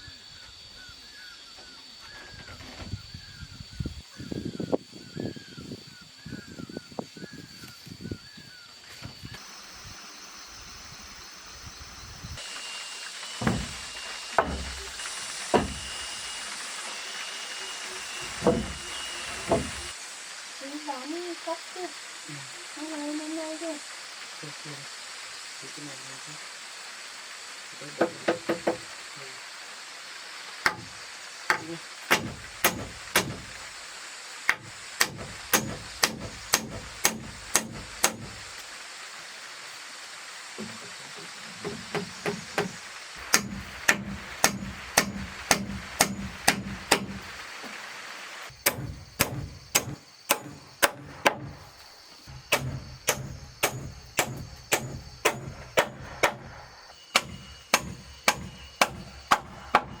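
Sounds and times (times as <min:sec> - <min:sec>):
hard strikes on wood: 0:13.4 - 0:16.2, 0:18.3 - 0:19.9, 0:28.0 - 0:28.8, 0:30.6 - 0:33.6, 0:34.5 - 0:38.5, 0:41.6 - 0:47.3, 0:48.6 - 0:51.6, 0:52.3 - 1:00.0.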